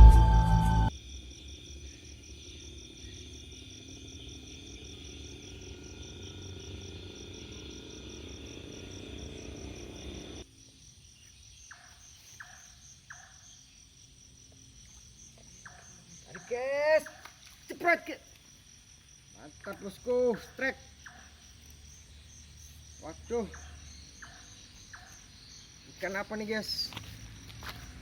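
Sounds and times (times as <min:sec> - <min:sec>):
crickets chirring: 0:00.0 - 0:28.0
low rumble: 0:02.6 - 0:10.4.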